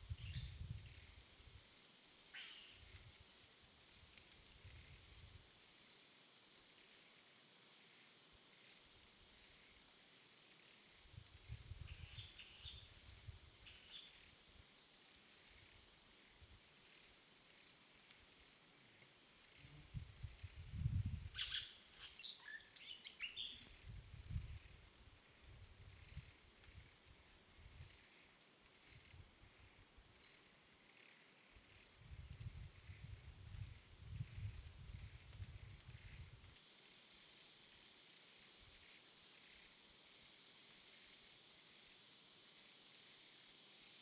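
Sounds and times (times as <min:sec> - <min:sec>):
high insect buzz: 0:10.6 - 0:44.0.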